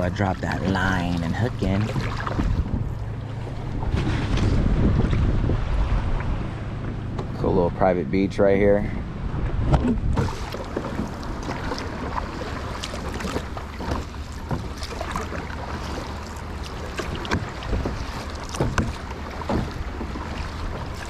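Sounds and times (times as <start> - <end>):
paddle splashing and dripping: 0.0 - 5.2, 10.2 - 21.0
water slapping against hull: 0.0 - 7.6, 9.2 - 21.0
wind rumble on microphone: 0.0 - 21.0.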